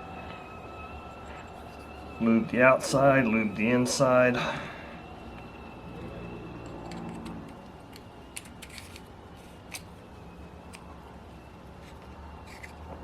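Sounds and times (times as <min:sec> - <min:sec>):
small metal parts clicking: 0:06.6 - 0:09.1.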